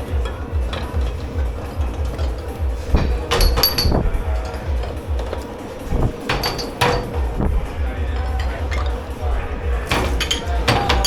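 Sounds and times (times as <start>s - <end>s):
background music with steady beat: 0.0s - 11.0s
dishes and cutlery clattering: 0.0s - 11.0s
sharp ringing clinks: 3.3s - 4.1s.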